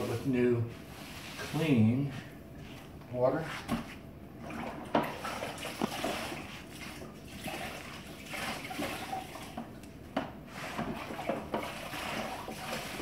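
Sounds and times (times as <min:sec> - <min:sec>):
wet sponge wiping tile: 0:00.0 - 0:04.0, 0:10.5 - 0:13.0.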